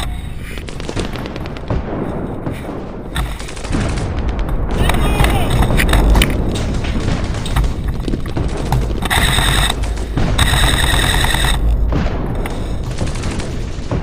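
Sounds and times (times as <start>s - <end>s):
constant low rumble: 0.0s - 14.0s
scattered clicks: 3.1s - 11.8s
airsoft gun full-auto bursts: 9.0s - 11.6s.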